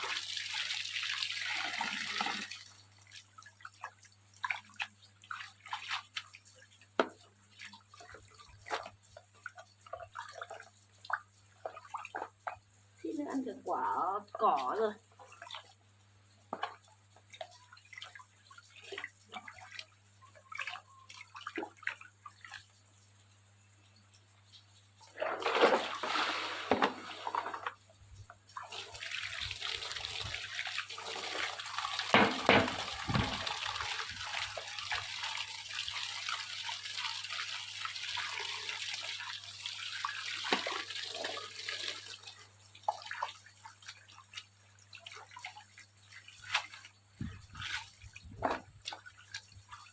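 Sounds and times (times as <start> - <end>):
water running from a tap: 0.0 - 3.6, 5.6 - 15.7, 28.5 - 43.7.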